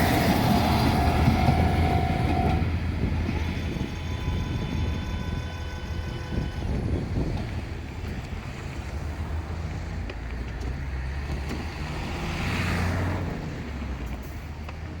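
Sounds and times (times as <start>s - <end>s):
diesel railcar engine drone: 0.0s - 15.0s.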